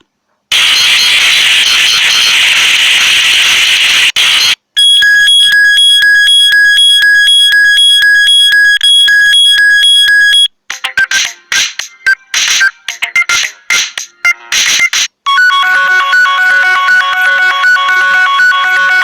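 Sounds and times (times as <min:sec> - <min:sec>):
harsh hissy electronic buzz: 0:00.5 - 0:04.4.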